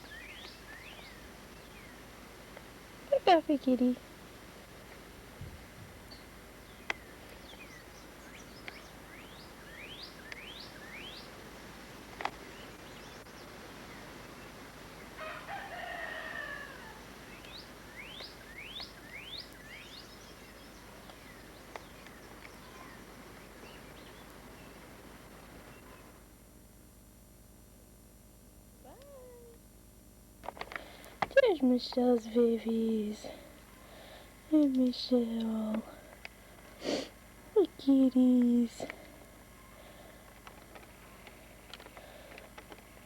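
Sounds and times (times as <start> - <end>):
rooster crowing: 15.2 - 17.2.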